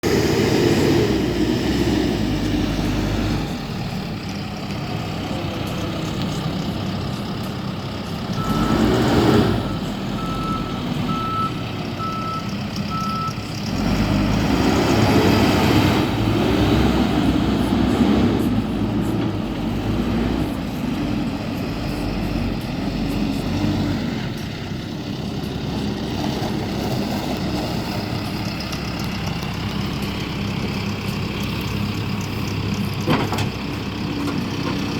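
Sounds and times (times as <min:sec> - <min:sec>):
diesel engine revving: 0:00.0 - 0:34.9
reverse alarm beeping: 0:08.4 - 0:08.9, 0:09.6 - 0:13.4.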